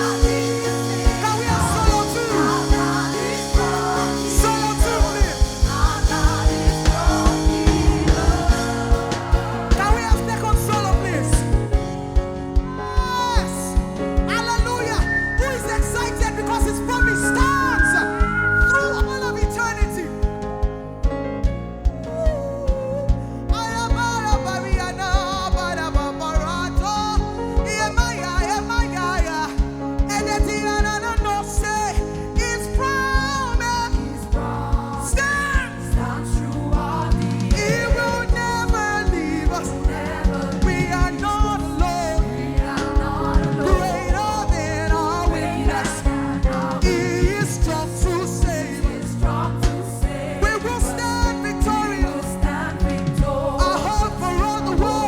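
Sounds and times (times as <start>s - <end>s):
person singing: 0.0s - 11.8s, 12.6s - 20.2s, 21.8s - 55.0s
drum beat: 0.0s - 55.0s
live band playing: 0.0s - 55.0s.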